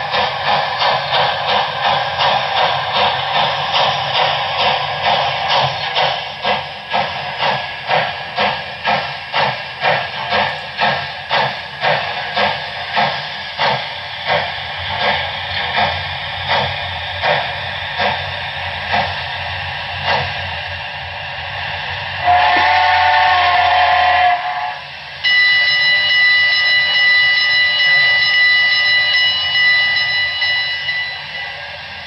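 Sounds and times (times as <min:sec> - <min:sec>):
steam locomotive exhaust chuffs: 0:00.0 - 0:32.0
chime whistle: 0:25.2 - 0:31.8.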